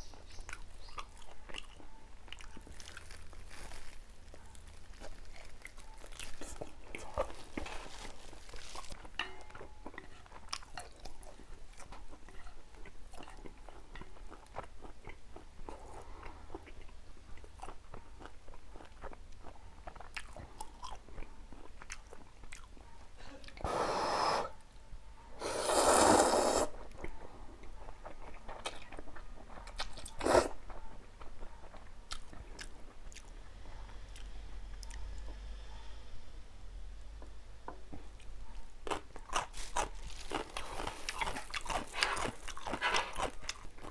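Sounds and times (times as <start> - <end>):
chewing and mouth sounds: 0.0 - 23.6, 26.3 - 35.4, 37.2 - 43.9.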